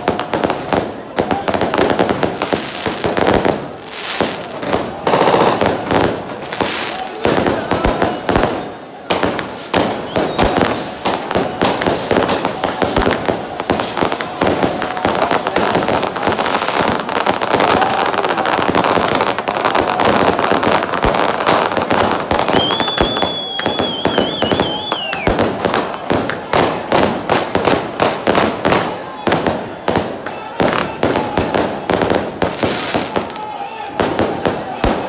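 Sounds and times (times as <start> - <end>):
firecrackers cracking: 0.0 - 35.0.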